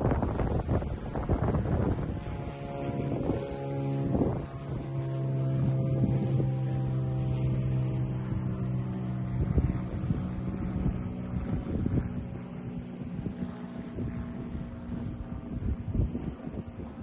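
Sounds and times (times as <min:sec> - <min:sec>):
engine hum: 0:00.0 - 0:17.0
wind buffeting microphone: 0:00.0 - 0:17.0.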